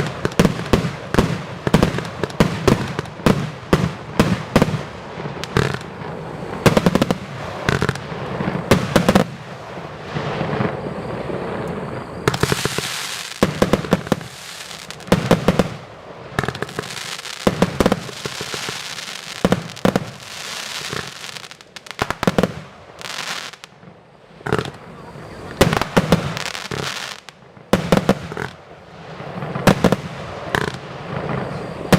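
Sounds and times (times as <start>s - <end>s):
firework hiss: 0.0s - 31.9s
firework shots: 0.0s - 31.9s.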